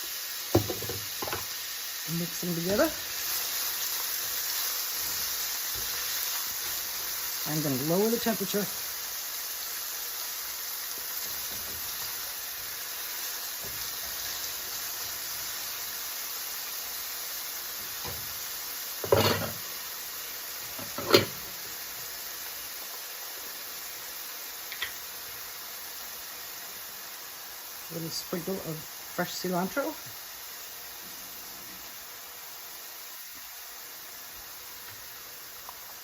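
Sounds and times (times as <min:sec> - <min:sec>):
vegetables sizzling in oil: 0:00.0 - 0:36.0.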